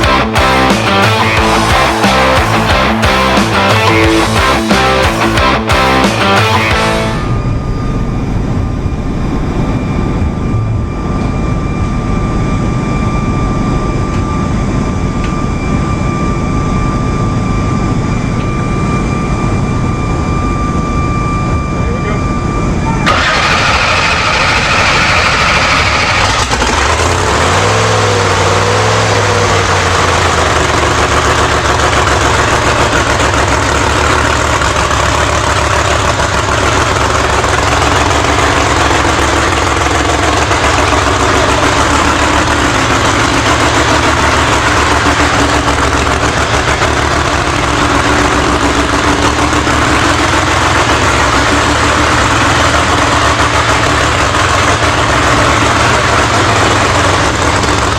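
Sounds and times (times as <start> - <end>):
race engine revving and idling: 0.0 - 7.4, 22.9 - 57.9.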